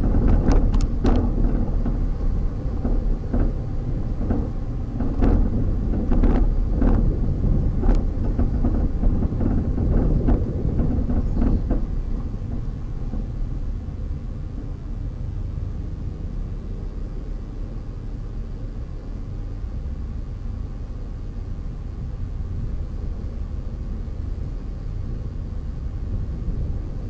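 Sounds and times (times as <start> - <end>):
knocks and thumps: 0.0 - 13.4
vehicle rumble on road: 0.0 - 27.0.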